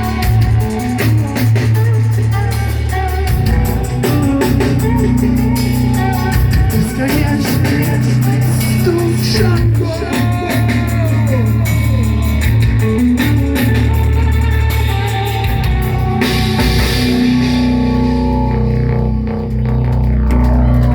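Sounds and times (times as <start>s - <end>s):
instrumental rock band: 0.0s - 20.9s.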